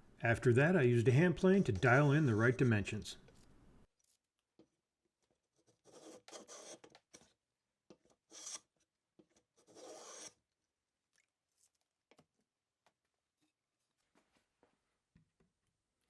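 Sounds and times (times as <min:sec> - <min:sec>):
hand plane shaving wood: 0:05.6 - 0:06.8.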